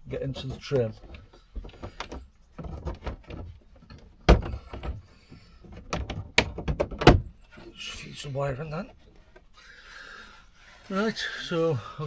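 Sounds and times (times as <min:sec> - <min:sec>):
plastic trim clicks and knocks: 0:05.6 - 0:07.3.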